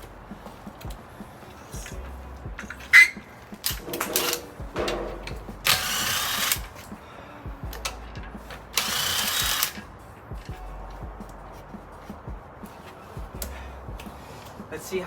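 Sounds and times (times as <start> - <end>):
tools clicking and knocking: 2.6 - 6.9
cordless power drill whirring: 5.7 - 6.8, 8.8 - 9.8.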